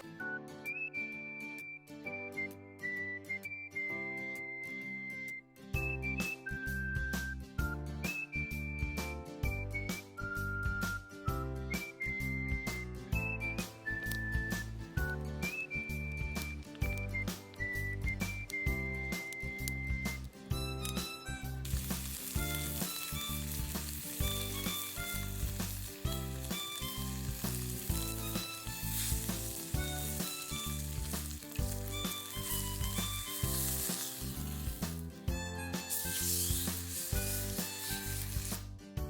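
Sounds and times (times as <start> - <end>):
background music with steady beat: 5.2 - 39.0
food sizzling as it fries: 15.5 - 38.8.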